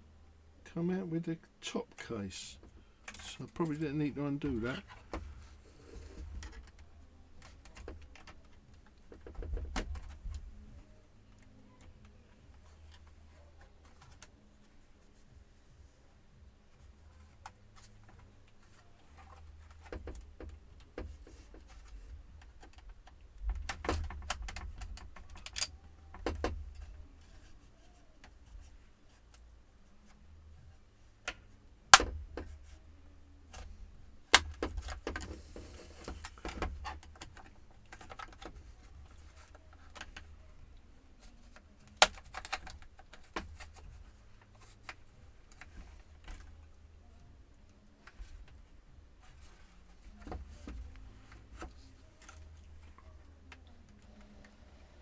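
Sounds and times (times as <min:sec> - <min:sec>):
plastic and metal parts clicking: 0:01.9 - 0:14.4, 0:17.2 - 0:54.8
sharp plastic snaps: 0:17.2 - 0:29.5, 0:31.2 - 0:32.8, 0:33.5 - 0:46.6.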